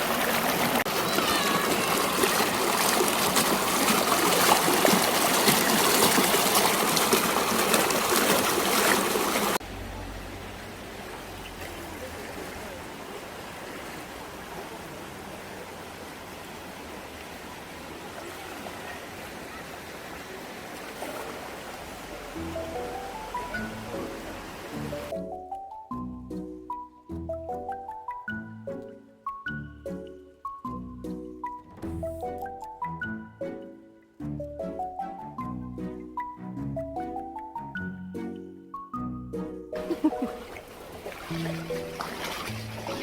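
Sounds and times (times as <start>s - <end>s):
stream running: 0.0s - 25.1s, 39.8s - 43.0s.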